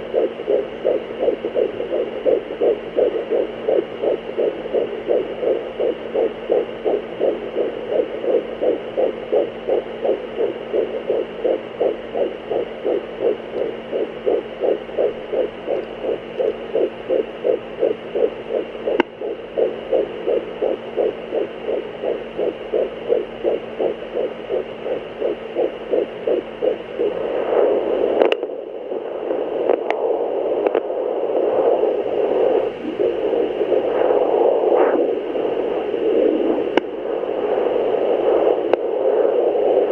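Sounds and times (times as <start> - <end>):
faint steady hum: 0.0 - 39.9
fetal heartbeat whooshing: 0.0 - 39.9
clicks: 28.2 - 28.5.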